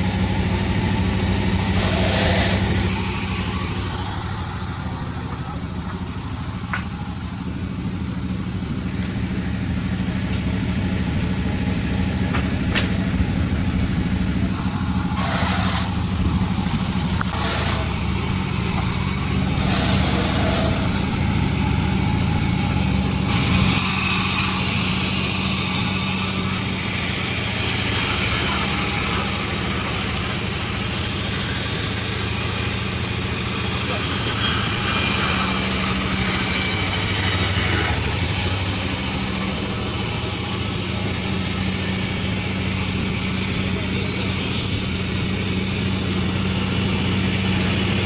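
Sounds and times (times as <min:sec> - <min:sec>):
engine hum: 0:00.0 - 0:48.0
saw blade hissing through wood: 0:01.0 - 0:05.0, 0:14.5 - 0:48.0.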